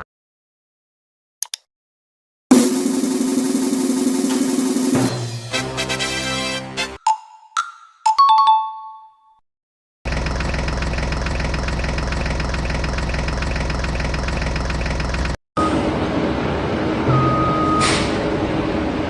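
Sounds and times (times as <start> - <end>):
vehicle engine idling: 10.1 - 15.4.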